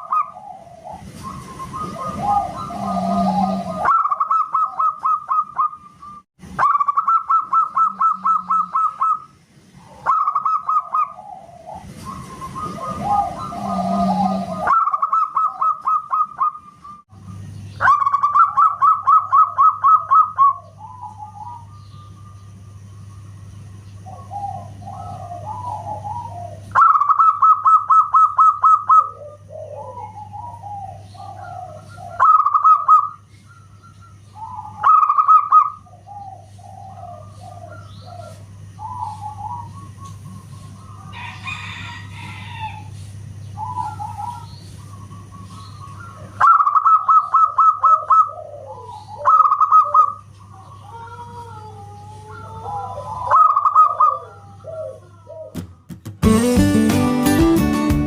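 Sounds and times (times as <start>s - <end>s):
dove rapid staccato cooing: 0.0s - 22.2s, 24.0s - 55.9s
low electrical hum: 0.0s - 56.0s
soft low coos: 2.1s - 3.9s, 12.8s - 14.7s, 50.5s - 55.6s.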